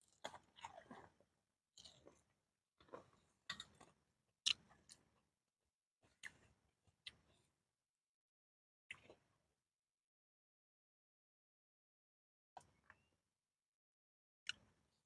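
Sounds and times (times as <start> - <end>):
biting and chewing corn: 0.0 - 5.0.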